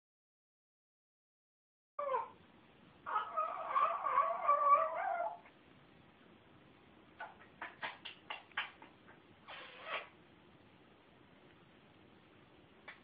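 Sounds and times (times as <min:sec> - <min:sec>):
pet wavering complaining cry: 0:02.0 - 0:02.4, 0:03.0 - 0:05.5.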